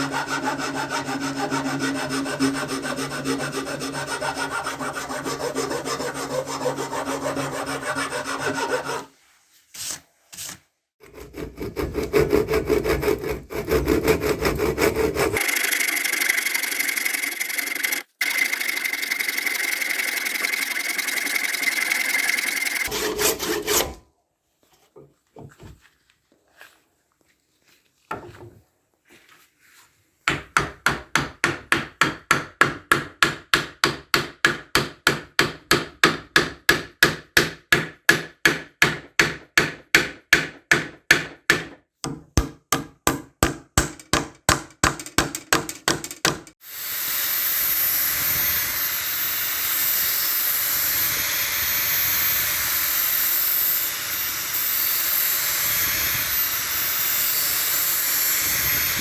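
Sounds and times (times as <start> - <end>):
power sharpener whining on blade: 15.4 - 23.9, 46.7 - 59.0
rapid hammer strikes: 30.3 - 46.6.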